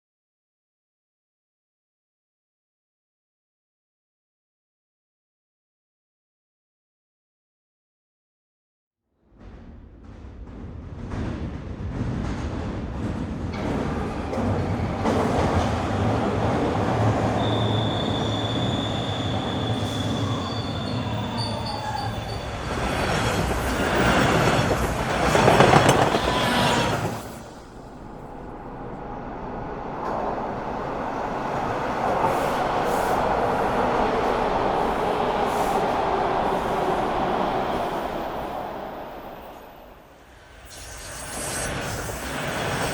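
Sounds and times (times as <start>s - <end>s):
subway train passing: 9.3s - 42.9s
subway train wheel squeal: 11.5s - 42.9s.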